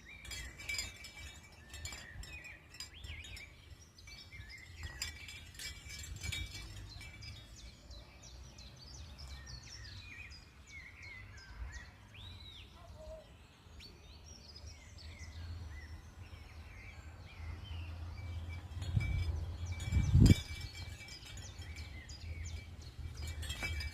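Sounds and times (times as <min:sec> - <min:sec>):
wind chime ringing: 0:00.0 - 0:08.2, 0:18.1 - 0:23.9
small birds chirping: 0:00.0 - 0:23.9
wind rumble on microphone: 0:17.7 - 0:23.9
wind gust buffeting microphone: 0:18.5 - 0:23.9.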